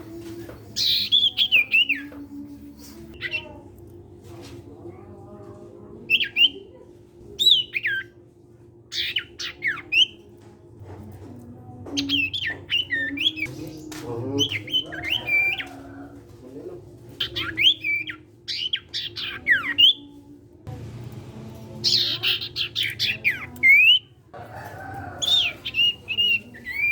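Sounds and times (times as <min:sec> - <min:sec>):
low hum: 0:20.5 - 0:23.6.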